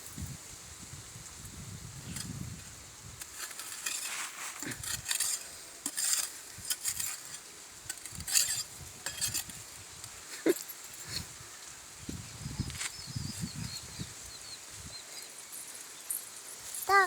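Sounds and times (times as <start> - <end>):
digging tool scraping dry soil: 2.0 - 11.4.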